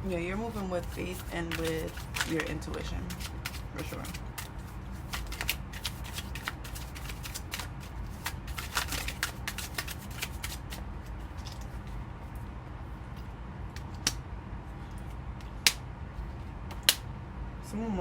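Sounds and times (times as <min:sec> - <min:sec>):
cards being shuffled: 0:00.3 - 0:12.4.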